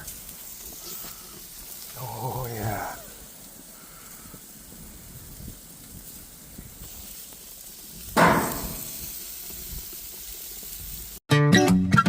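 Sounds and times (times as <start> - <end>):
steaks sizzling on a grill: 0.0 - 11.2
metal clank: 8.2 - 9.0.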